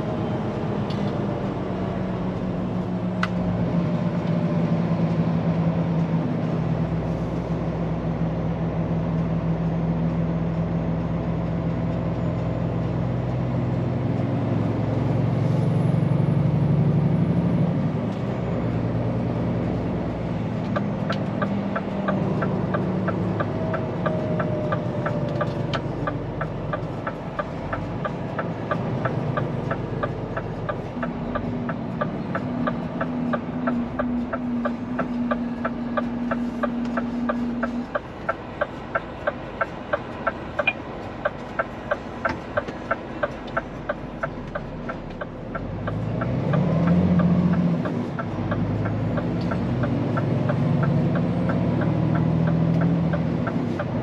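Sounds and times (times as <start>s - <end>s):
truck diesel engine running: 0.0s - 54.0s
fast regular ticking: 20.7s - 53.6s.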